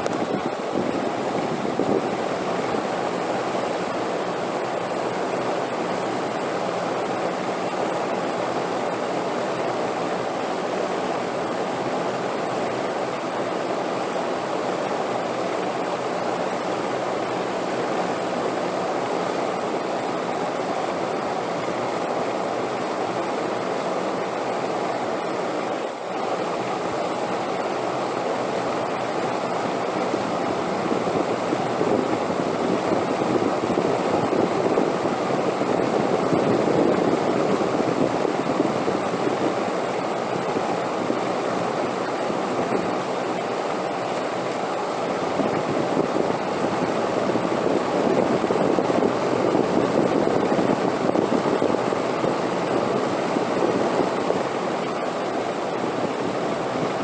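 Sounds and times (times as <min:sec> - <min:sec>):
wind blowing: 0:00.0 - 0:05.0, 0:29.7 - 0:57.0.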